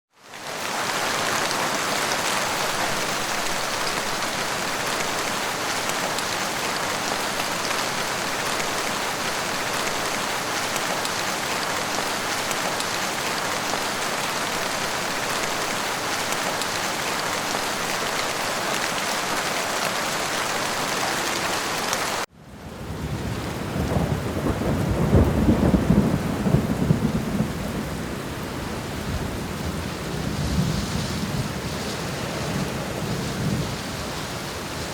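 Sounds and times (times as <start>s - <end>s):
steady rain falling: 0.1s - 34.9s
thunder rumble: 22.6s - 28.3s, 28.9s - 34.2s.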